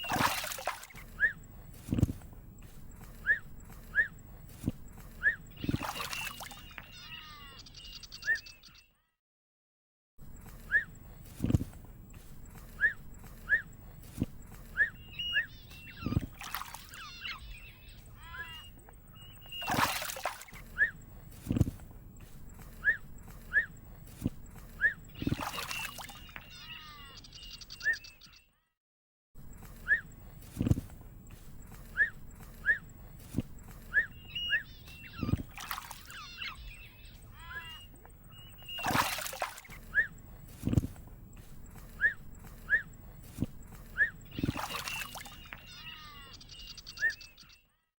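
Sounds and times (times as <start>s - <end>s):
water splashing: 0.0s - 1.4s, 5.6s - 6.8s, 15.8s - 17.3s, 19.4s - 20.9s, 25.2s - 26.4s, 33.2s - 36.5s, 38.6s - 41.0s, 43.2s - 45.8s
warbling animal calls: 0.0s - 8.5s, 12.4s - 21.8s, 22.4s - 28.4s, 29.8s - 47.7s.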